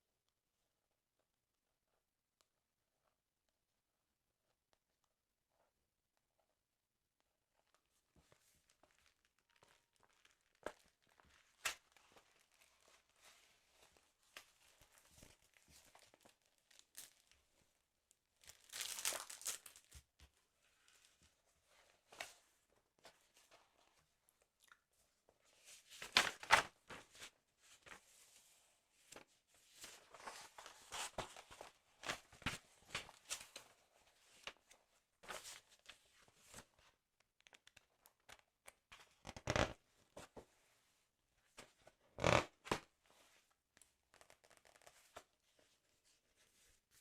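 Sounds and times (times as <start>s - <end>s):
paper rustling and crinkling: 18.4s - 20.0s, 25.6s - 28.4s, 29.0s - 38.4s.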